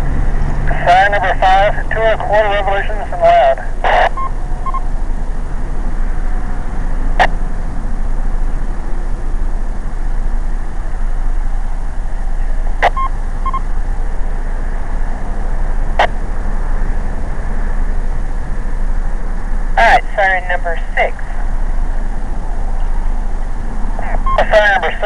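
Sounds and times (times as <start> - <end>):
radio static rumble and hiss: 0.0 - 25.0
short double beep: 24.2 - 24.5.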